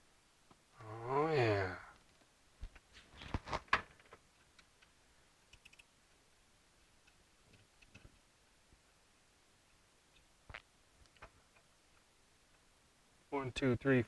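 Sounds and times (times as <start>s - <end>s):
faint ticks: 5.5s - 5.9s
small parts clicking and knocking: 7.0s - 8.2s.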